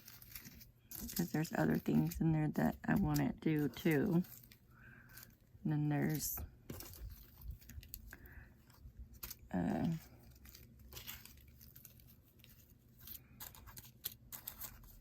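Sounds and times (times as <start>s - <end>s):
plastic bags crinkling: 0.0s - 15.0s.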